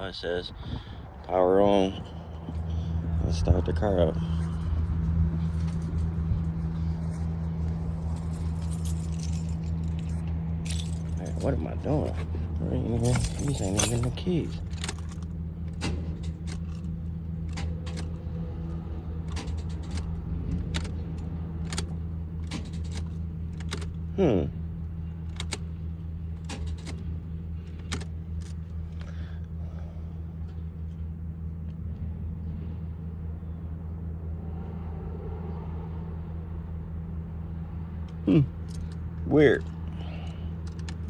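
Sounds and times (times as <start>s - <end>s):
car engine idling: 0.0s - 34.4s, 36.2s - 41.0s
keys and switches clicking: 19.2s - 24.0s, 25.2s - 25.8s, 26.4s - 27.1s, 27.7s - 29.1s, 40.5s - 41.0s.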